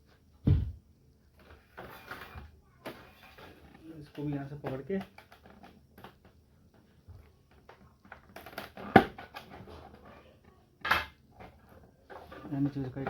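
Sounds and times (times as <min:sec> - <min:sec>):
plastic clicks and rattles: 0:01.4 - 0:06.9, 0:07.5 - 0:10.0.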